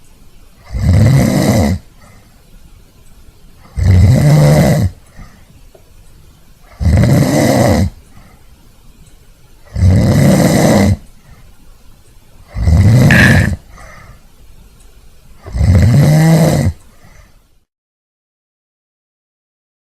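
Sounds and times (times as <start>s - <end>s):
loud snoring: 0.6s - 1.9s, 3.6s - 5.4s, 6.6s - 8.0s, 9.6s - 11.1s, 12.5s - 13.7s, 15.4s - 16.8s.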